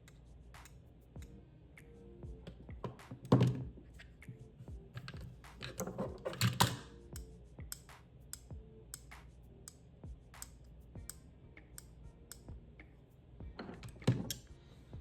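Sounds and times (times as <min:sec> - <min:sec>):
screwdrivers clicking and knocking: 0:02.5 - 0:03.6, 0:04.9 - 0:09.8, 0:13.6 - 0:14.5.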